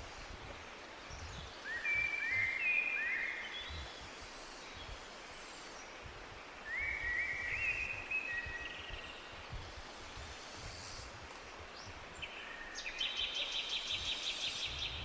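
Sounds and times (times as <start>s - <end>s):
rising whistled bird notes: 6.6s - 9.1s.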